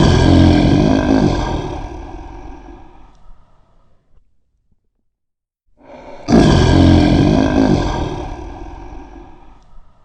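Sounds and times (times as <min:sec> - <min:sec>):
lion roaring: 0:00.0 - 0:02.8, 0:06.3 - 0:09.4.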